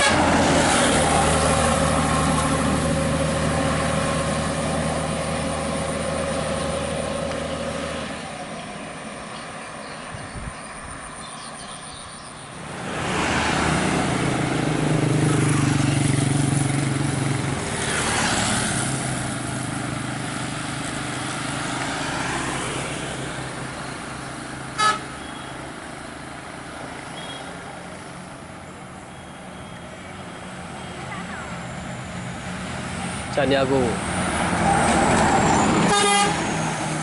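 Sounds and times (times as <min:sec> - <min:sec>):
vehicles passing: 0:00.0 - 0:37.0
car horn beep: 0:24.8 - 0:25.6, 0:35.9 - 0:36.4.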